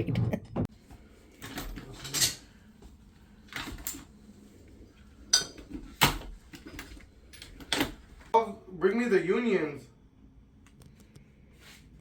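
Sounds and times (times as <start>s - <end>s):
metal tools clinking: 1.4s - 2.5s, 5.3s - 8.0s.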